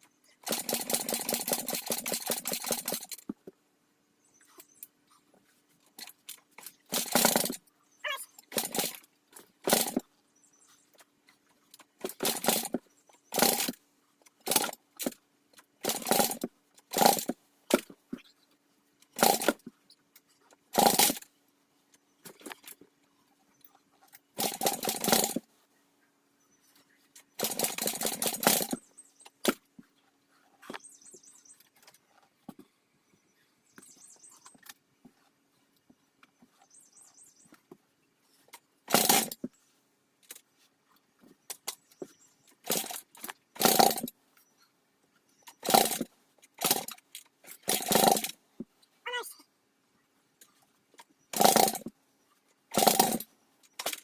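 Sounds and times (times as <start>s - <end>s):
dirt bike starter cranking: 0.4s - 3.3s, 6.0s - 7.6s, 8.4s - 10.0s, 12.0s - 13.8s, 14.4s - 15.2s, 15.8s - 17.4s, 19.1s - 19.6s, 20.7s - 21.3s, 24.4s - 25.4s, 27.4s - 28.8s, 38.9s - 39.5s, 42.6s - 44.1s, 45.5s - 48.4s, 51.3s - 51.9s, 52.7s - 54.0s.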